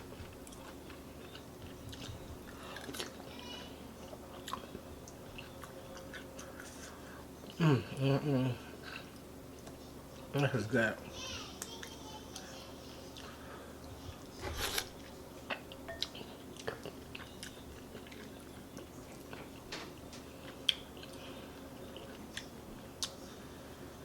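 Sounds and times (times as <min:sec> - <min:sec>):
person chewing and eating soup: 0:00.0 - 0:08.0, 0:08.6 - 0:10.0, 0:14.6 - 0:23.7.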